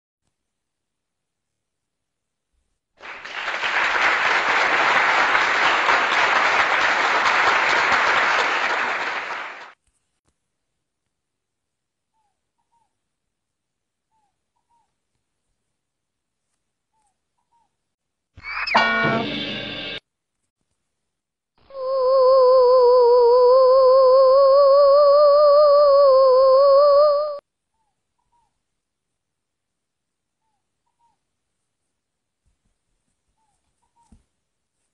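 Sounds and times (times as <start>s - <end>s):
crowd clapping: 3.0s - 9.8s
held tone with fast vibrato: 18.4s - 20.0s.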